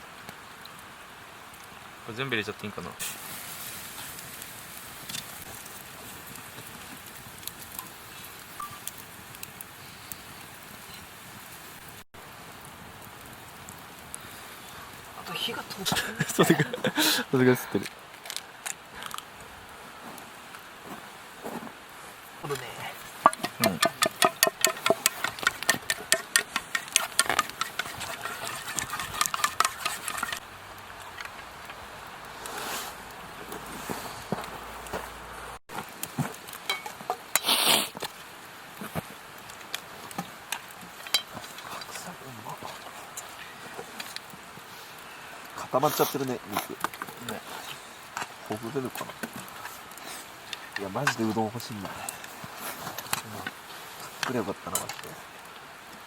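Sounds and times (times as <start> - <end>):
campfire crackling: 0.0 - 56.0
faint steady hiss: 0.0 - 56.0
food sizzling in a pot: 2.7 - 17.6, 22.3 - 33.2, 36.0 - 56.0
utensil clicking against cooking pot: 23.2 - 30.4.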